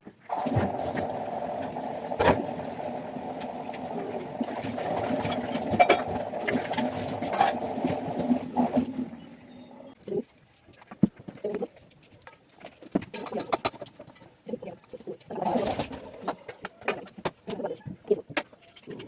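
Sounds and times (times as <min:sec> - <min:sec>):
mechanical hum: 0:00.0 - 0:10.2.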